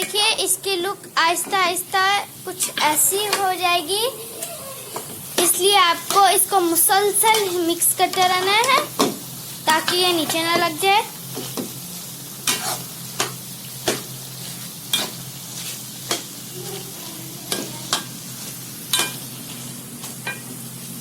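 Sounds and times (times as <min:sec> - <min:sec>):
food sizzling in oil: 0:00.0 - 0:21.0
spoon scraping and knocking a pan: 0:12.4 - 0:16.4, 0:18.9 - 0:20.6.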